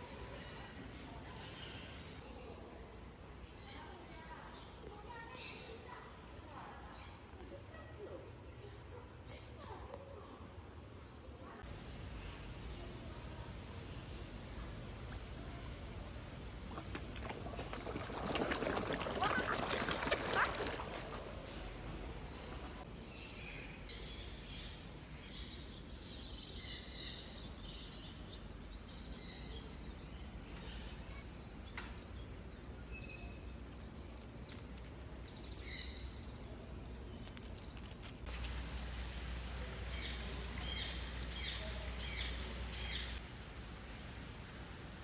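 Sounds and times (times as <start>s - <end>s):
small birds chirping: 0.0s - 3.0s, 11.6s - 43.2s
steady background hum: 11.6s - 45.0s.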